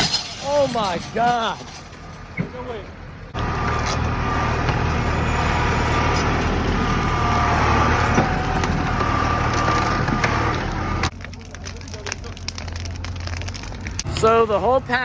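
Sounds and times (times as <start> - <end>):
excavator engine running: 1.9 - 14.8
light cracks or clicks: 11.1 - 14.1.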